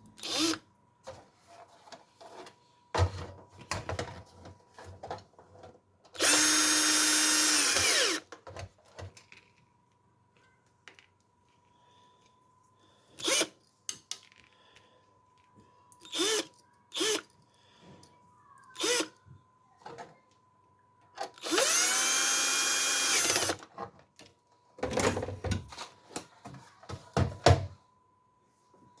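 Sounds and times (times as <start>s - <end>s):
electric screwdriver whirring: 0.2s - 0.6s, 6.2s - 8.2s, 13.2s - 13.5s, 16.0s - 17.2s, 18.8s - 19.1s, 21.4s - 23.6s.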